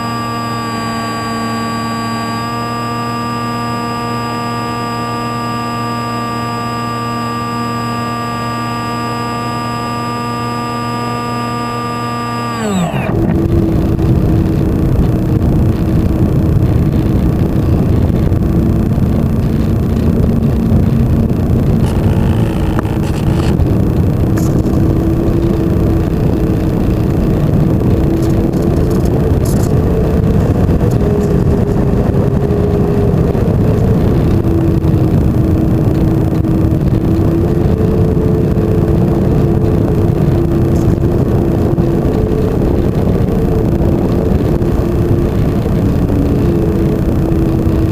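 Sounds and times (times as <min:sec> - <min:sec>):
model plane motor drone: 0:00.0 - 0:47.9
rush of air noise: 0:12.6 - 0:47.9.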